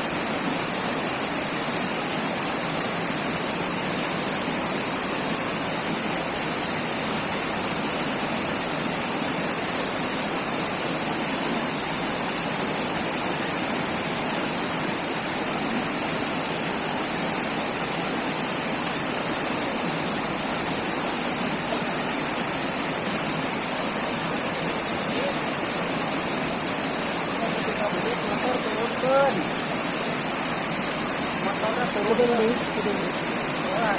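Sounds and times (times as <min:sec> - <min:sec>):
river water rushing over rocks: 0:00.0 - 0:33.9.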